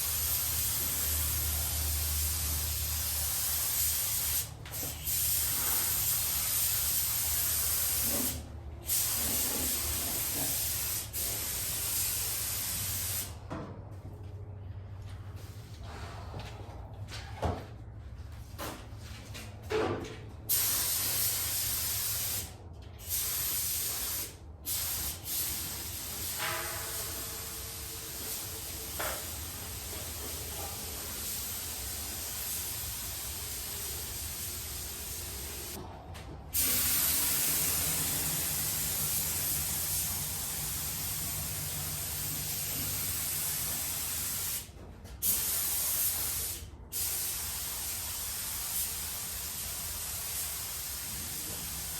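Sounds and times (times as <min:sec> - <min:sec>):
spray gun hissing: 0:00.0 - 0:13.3, 0:20.5 - 0:35.8, 0:36.6 - 0:51.9.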